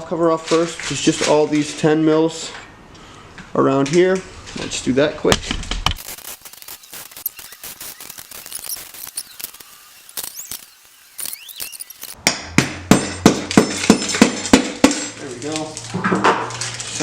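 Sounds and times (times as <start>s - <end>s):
ratchet clicking: 6.0s - 12.2s
short squeaks: 6.0s - 12.2s.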